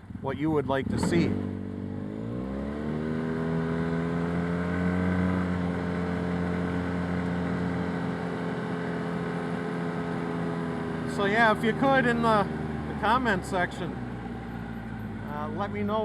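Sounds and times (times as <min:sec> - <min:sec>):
utility vehicle engine revving: 0:00.0 - 0:16.0.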